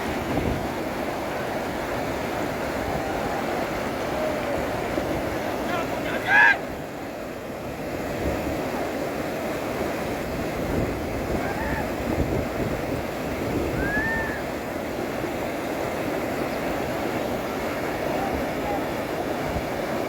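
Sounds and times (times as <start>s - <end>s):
river rushing roar: 0.0s - 20.0s.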